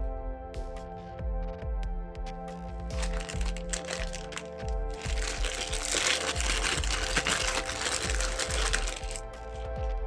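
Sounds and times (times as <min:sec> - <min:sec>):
background music with steady beat: 0:00.0 - 0:10.0
rough scratchy crinkling: 0:02.9 - 0:09.7.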